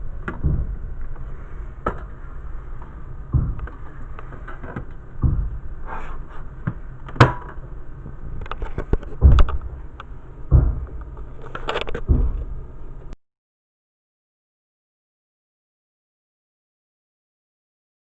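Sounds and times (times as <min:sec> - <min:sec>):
objects knocking and thumping: 0:00.2 - 0:05.8, 0:08.4 - 0:13.2.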